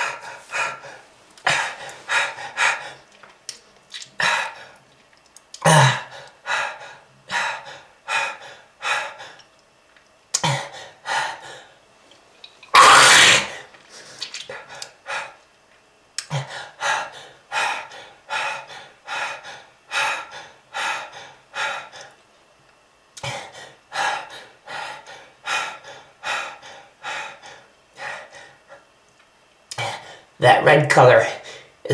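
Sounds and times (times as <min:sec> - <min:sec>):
person coughing harshly: 0:05.6 - 0:06.1, 0:12.8 - 0:13.6.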